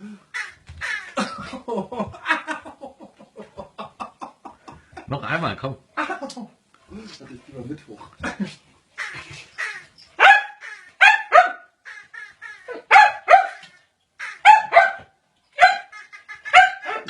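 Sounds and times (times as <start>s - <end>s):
dog barking high-pitched: 10.2s - 11.7s, 12.7s - 13.7s, 14.4s - 15.9s, 16.5s - 17.0s.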